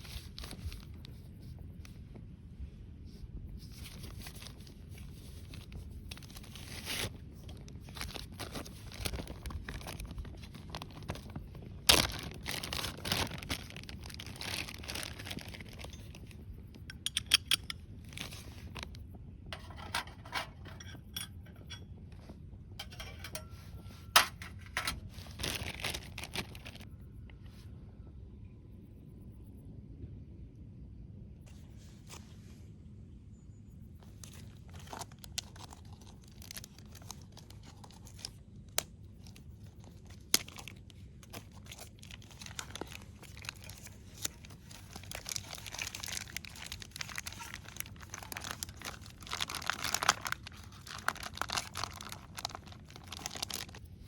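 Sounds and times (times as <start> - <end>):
rustling and crinkling: 0.0 - 27.6, 33.9 - 54.0.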